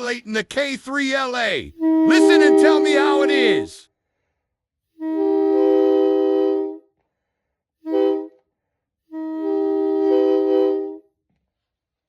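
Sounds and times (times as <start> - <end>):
air horn chord blasts: 1.8 - 3.7.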